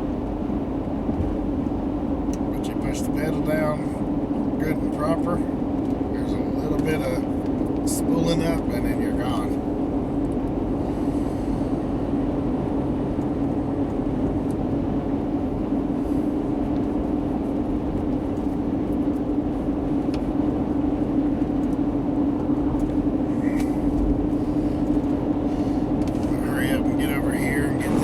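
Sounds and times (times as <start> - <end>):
engine and road drone inside vehicle: 0.0 - 28.0.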